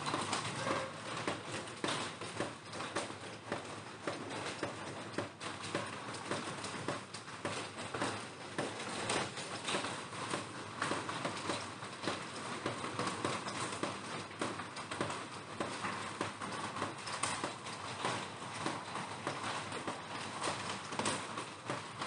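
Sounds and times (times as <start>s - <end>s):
raindrops tapping on plastic roof: 0.0s - 22.0s.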